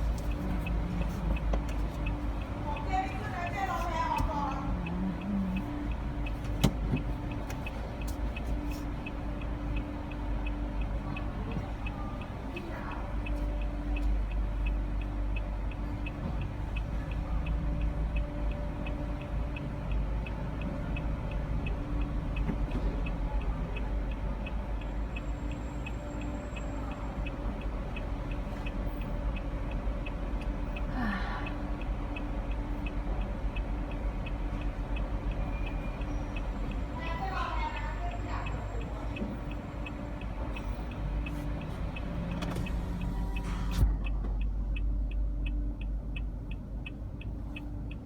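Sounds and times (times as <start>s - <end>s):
low rumble of car: 0.0s - 48.0s
turn signal ticking: 0.0s - 48.0s.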